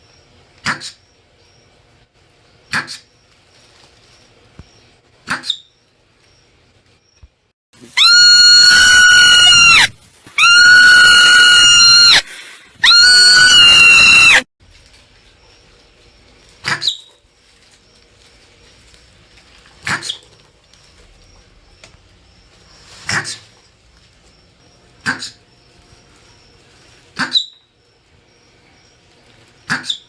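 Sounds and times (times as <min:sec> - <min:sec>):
marmot screaming: 0:07.8 - 0:14.5.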